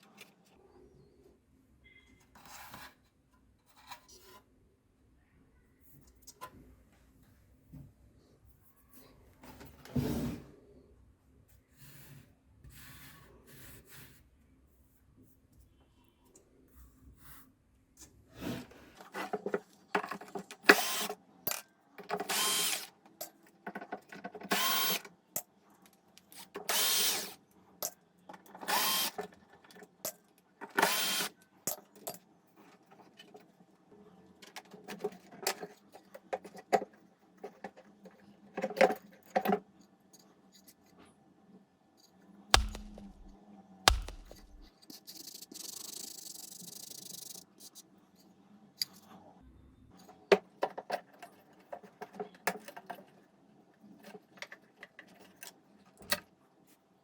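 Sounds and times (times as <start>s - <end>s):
power drill bursts: 22.3s - 22.9s, 24.5s - 25.0s, 26.7s - 27.4s, 28.7s - 29.2s, 30.8s - 31.3s, 42.6s - 43.3s, 43.9s - 44.6s
parts clattering: 42.6s - 44.7s.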